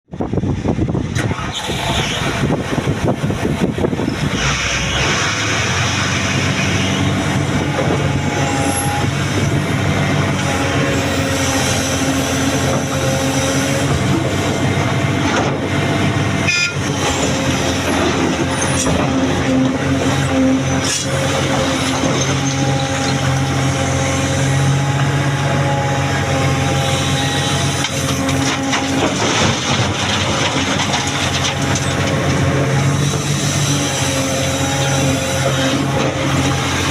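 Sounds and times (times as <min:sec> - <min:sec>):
diesel machinery engine drone: 0:00.1 - 0:36.9
whining tones: 0:03.9 - 0:14.6.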